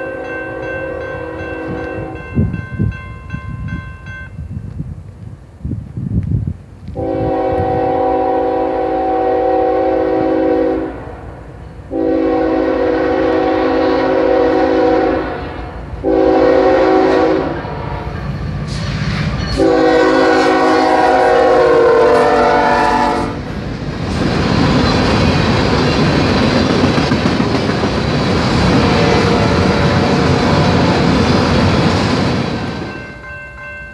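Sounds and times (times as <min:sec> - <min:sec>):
locomotive horn blasts: 0:00.0 - 0:02.3, 0:07.0 - 0:11.2, 0:11.9 - 0:18.2, 0:19.5 - 0:23.5, 0:28.6 - 0:30.9
train rumble: 0:00.0 - 0:33.9.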